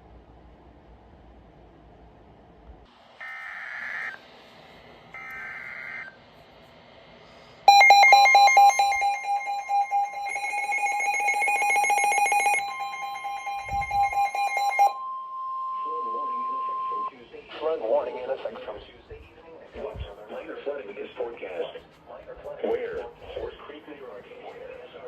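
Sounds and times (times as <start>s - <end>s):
harsh two-tone attention signal: 7.7s - 17.2s.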